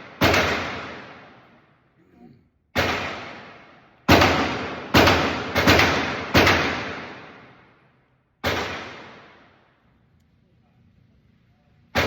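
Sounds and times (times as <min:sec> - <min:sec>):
echoing gunshots: 0:00.0 - 0:01.5, 0:02.7 - 0:09.8.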